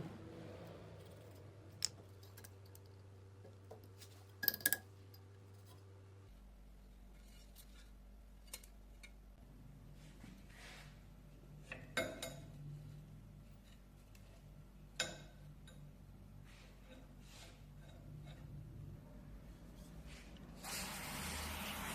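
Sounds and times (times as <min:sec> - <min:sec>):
faint low hum: 0:00.0 - 0:20.6
metal objects clinking: 0:04.0 - 0:04.9.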